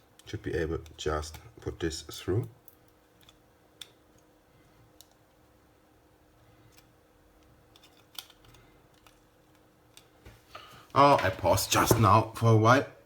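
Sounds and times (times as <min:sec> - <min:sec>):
faint steady hum: 0:00.0 - 0:13.0
small parts clicking and tapping: 0:02.6 - 0:04.3, 0:04.9 - 0:05.4, 0:06.7 - 0:10.2.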